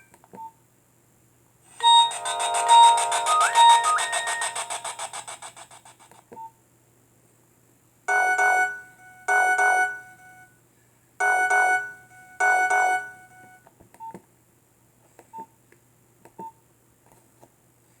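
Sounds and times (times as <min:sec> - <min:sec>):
mobile phone ringtone chimes: 0:01.8 - 0:05.5
keypad beeps: 0:01.8 - 0:05.8.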